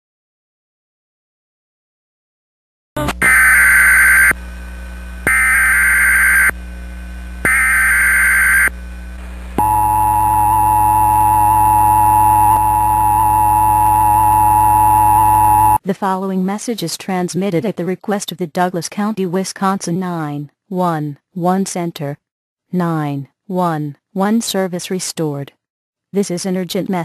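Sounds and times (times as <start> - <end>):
warbling digital data screech: 5.3 - 6.5, 7.5 - 8.7, 9.6 - 15.8
two-tone attention signal: 9.6 - 15.8.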